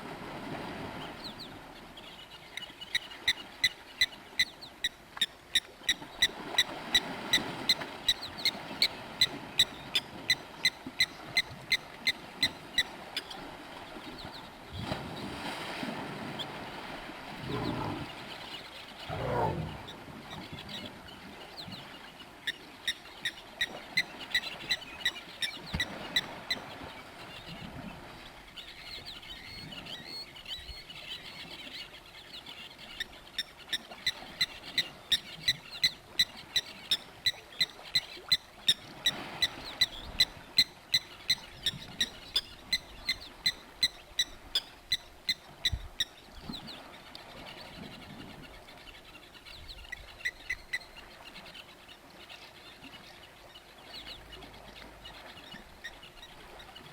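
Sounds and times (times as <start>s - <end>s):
faint outdoor background: 16.9s - 26.1s.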